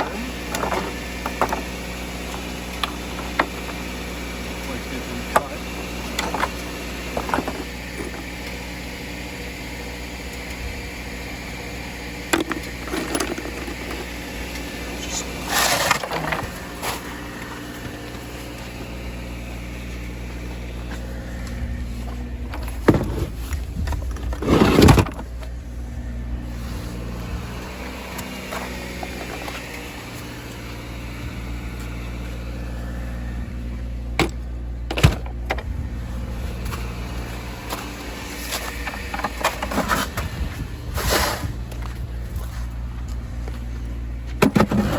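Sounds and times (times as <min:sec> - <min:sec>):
vehicle engine and road drone: 0:00.0 - 0:44.9.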